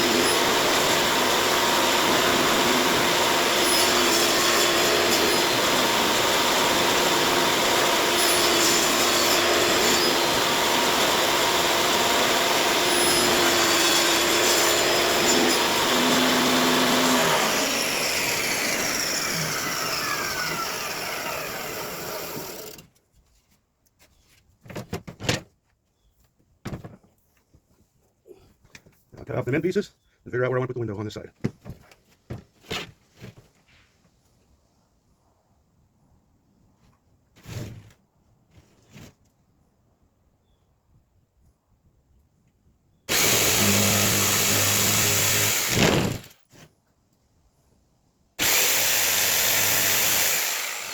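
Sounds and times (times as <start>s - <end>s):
saw blade coasting down whine: 0.0s - 22.8s, 48.4s - 50.9s
table saw cutting wood: 0.0s - 22.8s, 43.1s - 46.3s, 48.4s - 50.9s.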